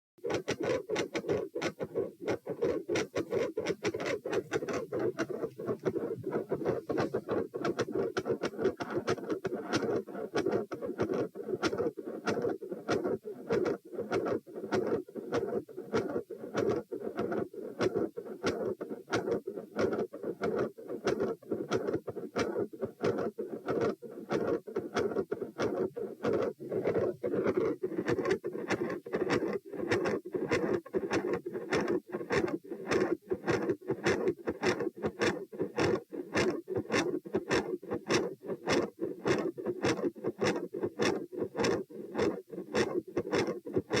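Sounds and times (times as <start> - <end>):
heartbeat through stethoscope: 0.2 - 9.2.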